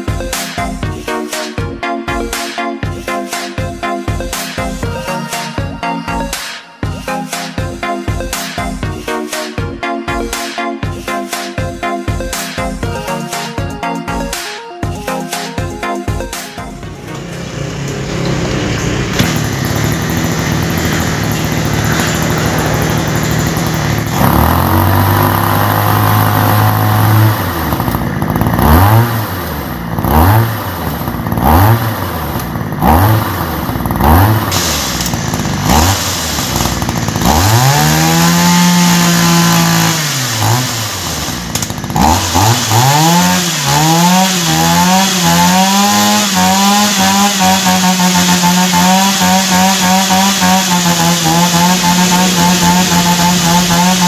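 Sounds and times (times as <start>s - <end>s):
small electric motor running: 17.3s - 29.0s, 30.8s - 45.4s, 46.2s - 54.0s.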